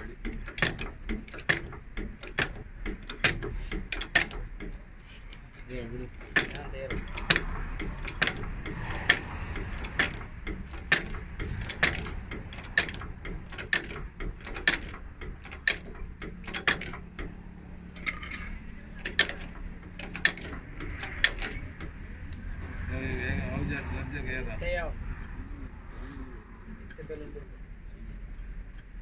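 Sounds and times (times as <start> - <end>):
ratchet tool clicking: 0.0 - 22.5
low hum: 4.8 - 29.0.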